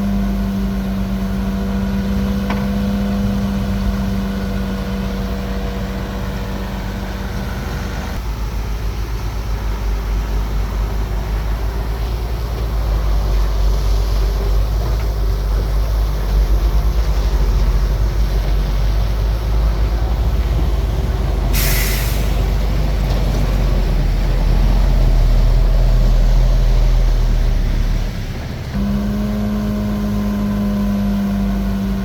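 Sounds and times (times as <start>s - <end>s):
diesel engine rumbling: 0.0s - 32.0s
sharp hiss: 21.5s - 22.8s.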